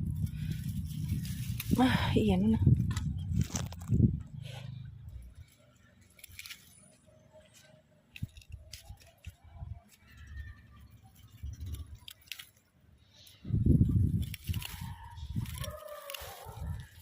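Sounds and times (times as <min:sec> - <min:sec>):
faint rustling of leaves: 0:00.0 - 0:17.0
light crackles and snaps: 0:02.7 - 0:04.0, 0:08.1 - 0:10.2, 0:11.5 - 0:13.4, 0:14.2 - 0:17.0.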